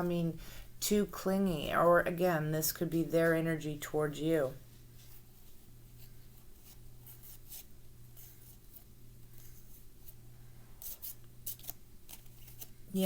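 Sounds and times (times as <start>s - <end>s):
low steady hum: 0.0s - 13.0s
cards rustling and sliding: 10.8s - 12.8s.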